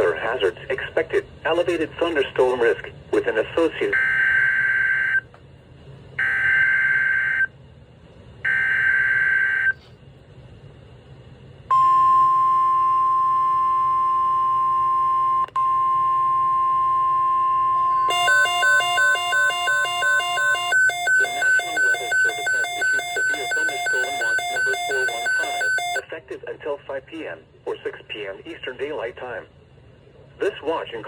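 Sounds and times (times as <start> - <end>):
long steady attention tone: 8.4 - 9.8, 11.7 - 26.4
fast pulsing beeping tones: 17.3 - 26.0
buzzy digital data tones: 17.6 - 26.0.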